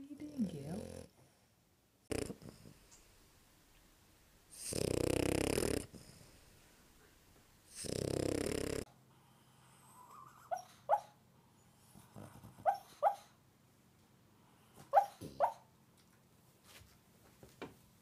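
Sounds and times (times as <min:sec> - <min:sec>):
dog snoring: 0:00.3 - 0:01.4, 0:02.1 - 0:02.8, 0:04.5 - 0:06.4, 0:07.7 - 0:10.6, 0:11.6 - 0:12.8
dog woofing in sleep: 0:02.1 - 0:02.8, 0:04.5 - 0:06.2, 0:07.7 - 0:08.9, 0:09.8 - 0:11.2, 0:11.8 - 0:13.3, 0:14.8 - 0:15.7.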